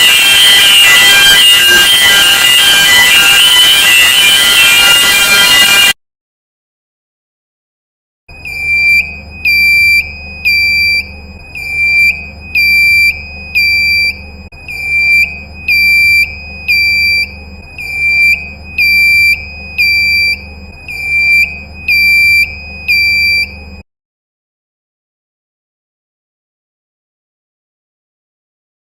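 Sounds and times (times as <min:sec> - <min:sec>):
shrill pulsing alarm tone: 0:00.0 - 0:06.0, 0:08.3 - 0:23.8
low steady hum: 0:08.3 - 0:23.8.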